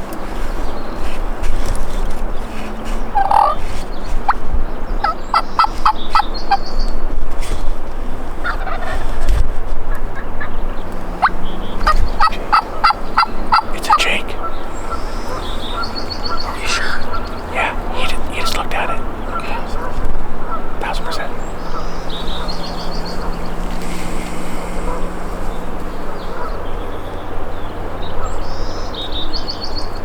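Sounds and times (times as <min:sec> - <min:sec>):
wild turkeys calling: 0:03.1 - 0:03.7, 0:05.0 - 0:07.0, 0:08.3 - 0:09.3, 0:10.0 - 0:27.2.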